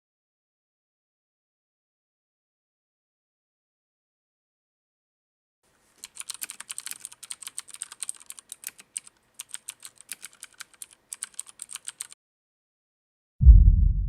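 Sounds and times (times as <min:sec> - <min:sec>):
mechanical keyboard key clicks: 0:06.0 - 0:12.2.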